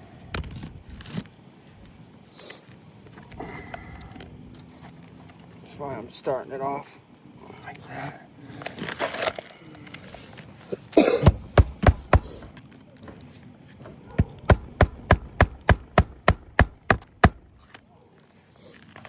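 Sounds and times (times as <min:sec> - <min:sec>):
hammer striking roofing nails: 0:11.0 - 0:12.5, 0:14.2 - 0:17.7.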